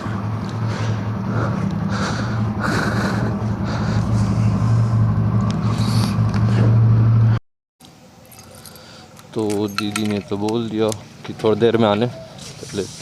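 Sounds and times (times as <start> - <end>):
motorcycle engine idling: 0.0 - 6.9.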